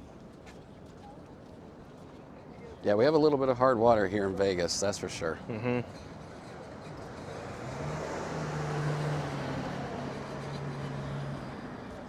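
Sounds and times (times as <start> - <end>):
vehicle driving past: 7.2 - 12.0.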